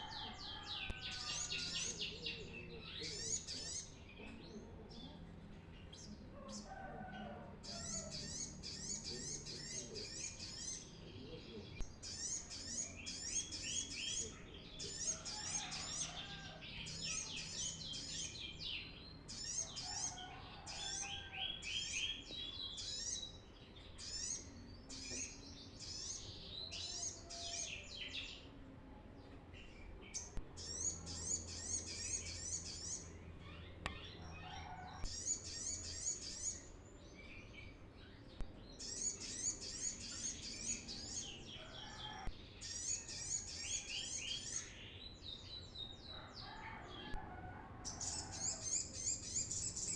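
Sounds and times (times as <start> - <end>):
sunbird twittering song: 29.6 - 46.6.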